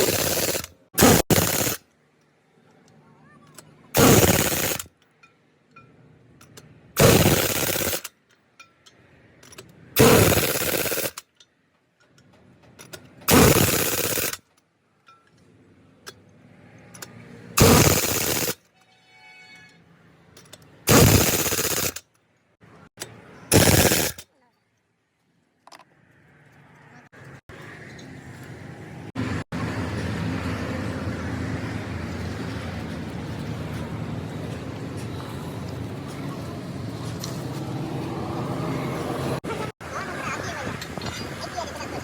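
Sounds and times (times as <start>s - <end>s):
impact wrench hammering: 0.0s - 1.8s, 7.0s - 8.1s, 17.6s - 18.6s, 20.9s - 22.0s, 23.0s - 24.2s.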